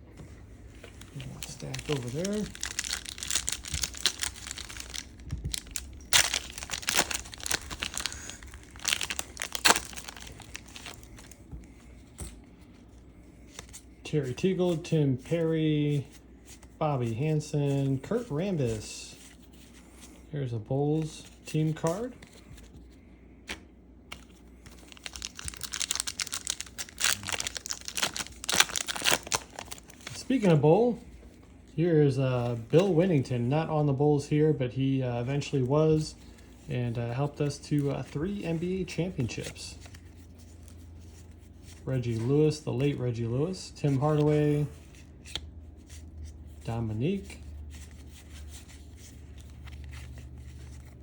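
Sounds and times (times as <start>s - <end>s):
wrapper crinkling and rustling: 0.6s - 13.9s, 24.1s - 31.0s, 35.2s - 43.1s, 43.8s - 51.0s
rapid crackles: 0.9s - 11.4s
wrapper tearing: 0.9s - 11.4s, 24.7s - 30.2s.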